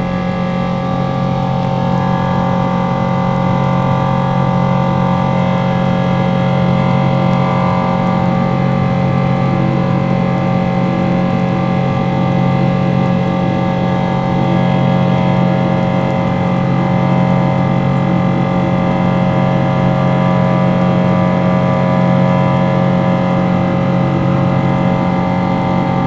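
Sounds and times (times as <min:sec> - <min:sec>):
jet engines droning in cabin: 0:00.0 - 0:26.0.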